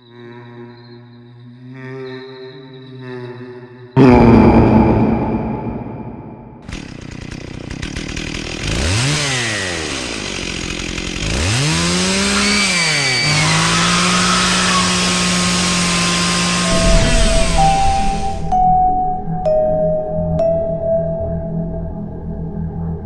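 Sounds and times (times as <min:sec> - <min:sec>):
chainsaw revving: 0:06.7 - 0:18.4.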